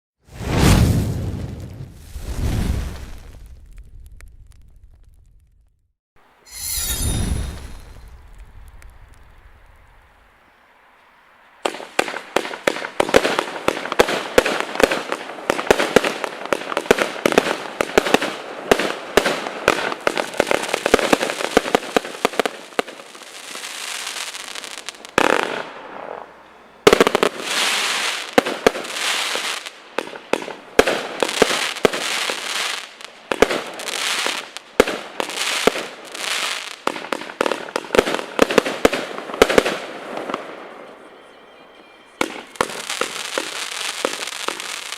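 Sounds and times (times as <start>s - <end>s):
firework cake volleys crackling: 0.3s - 5.4s, 26.9s - 40.3s, 42.2s - 44.9s.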